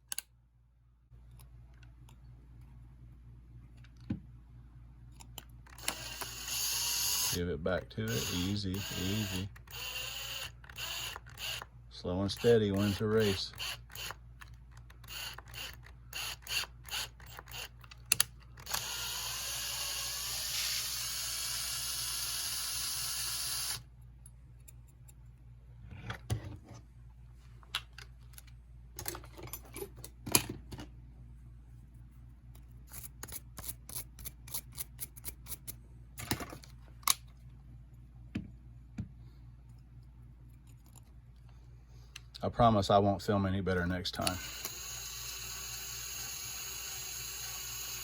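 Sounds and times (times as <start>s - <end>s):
small motor running: 5.8s - 7.4s, 8.1s - 11.6s, 12.3s - 14.2s, 15.0s - 17.7s, 18.6s - 23.8s, 44.4s - 48.0s.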